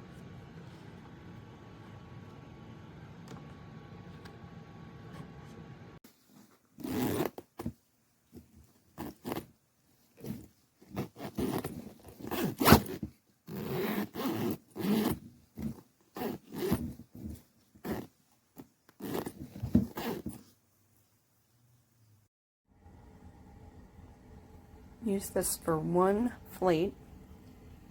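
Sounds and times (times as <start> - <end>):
luggage zipper pulled: 6.8 - 7.8, 9.0 - 9.5, 10.2 - 20.5.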